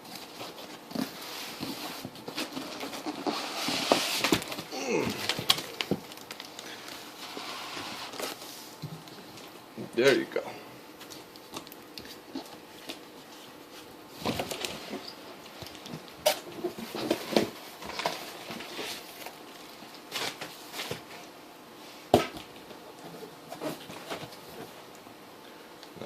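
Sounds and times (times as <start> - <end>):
packaging rustling: 0.0 - 8.5, 11.0 - 21.2.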